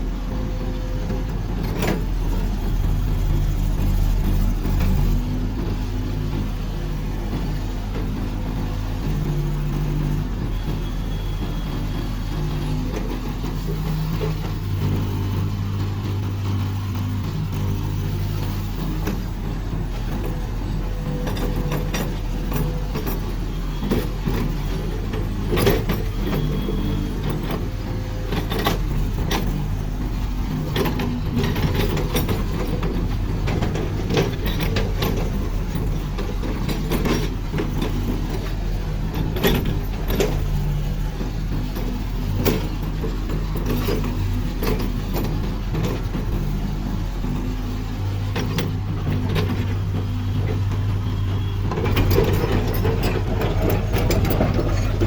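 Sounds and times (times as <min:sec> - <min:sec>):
excavator diesel engine running: 0:00.0 - 0:55.0
sharp metallic clanks and knocks: 0:28.3 - 0:46.6, 0:47.2 - 0:55.0.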